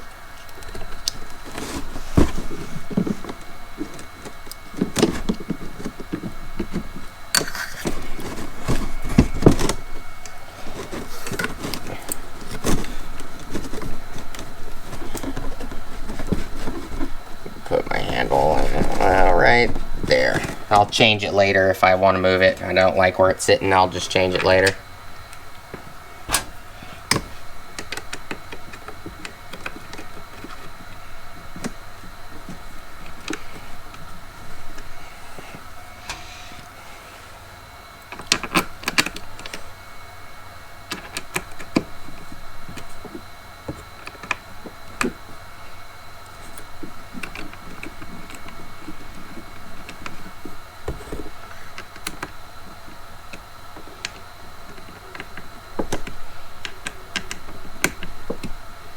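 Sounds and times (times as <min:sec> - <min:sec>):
faint steady hum: 0:00.0 - 0:58.9
clicks and knocks of parts handled: 0:46.2 - 0:58.6.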